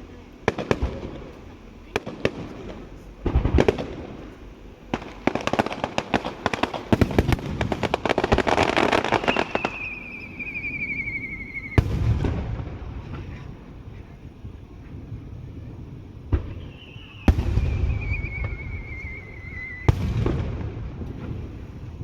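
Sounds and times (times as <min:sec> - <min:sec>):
fireworks crackling pops: 0:00.0 - 0:22.0
firework loud bang: 0:05.0 - 0:13.6, 0:16.3 - 0:21.8
firework whistle: 0:08.5 - 0:12.3, 0:16.4 - 0:20.4.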